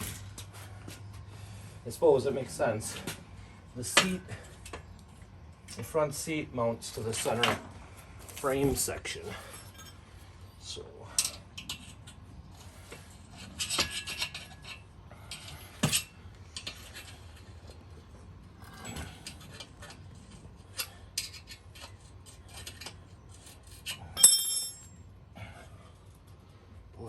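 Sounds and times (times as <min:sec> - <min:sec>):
tools clicking and scraping: 0:11.1 - 0:25.0.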